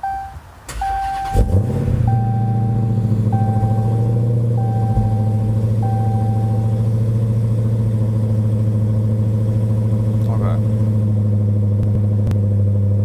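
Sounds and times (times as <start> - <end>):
dashboard warning chime beeps: 0.0 - 7.2
car engine idling: 0.0 - 13.0.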